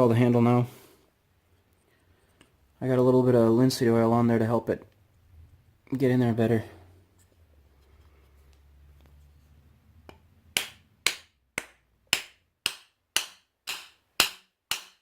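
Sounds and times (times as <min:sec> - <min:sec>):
hammer handle knocking: 0:10.6 - 0:15.0.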